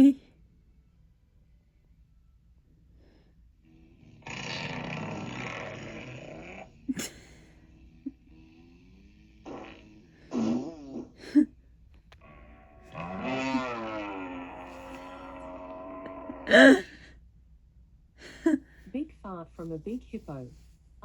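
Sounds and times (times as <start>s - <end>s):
comedic fart sound effect: 4.2s - 7.2s, 9.4s - 11.4s, 12.2s - 16.6s.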